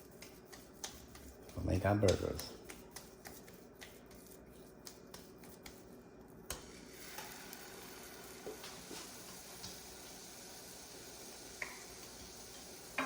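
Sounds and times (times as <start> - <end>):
faint sizzling in frying pan: 6.5 - 13.0.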